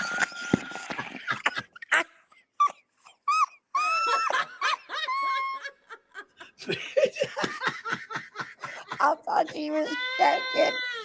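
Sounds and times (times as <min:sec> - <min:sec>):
high-pitched squealing laughter: 0:01.8 - 0:05.9.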